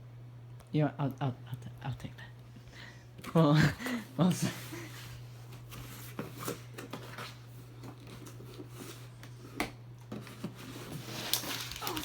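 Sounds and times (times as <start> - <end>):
steady low hum: 0.0 - 12.0
packaging rustling: 10.1 - 12.0.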